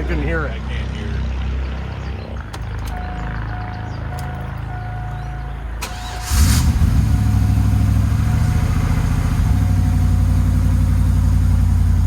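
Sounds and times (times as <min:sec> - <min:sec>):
car engine starting and idling: 0:02.4 - 0:12.0.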